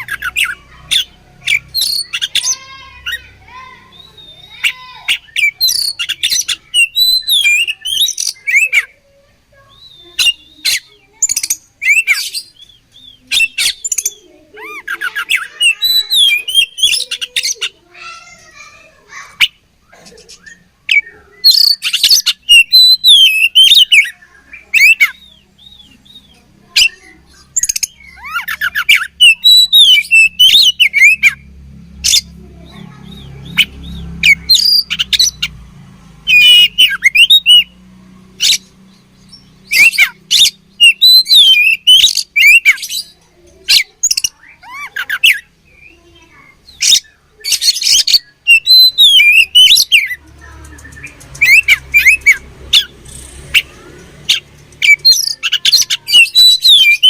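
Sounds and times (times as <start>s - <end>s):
bird singing whistles and trills: 3.9s - 8.9s, 20.4s - 31.4s, 36.3s - 37.8s, 38.4s - 46.0s, 46.7s - 53.7s, 54.3s - 57.0s.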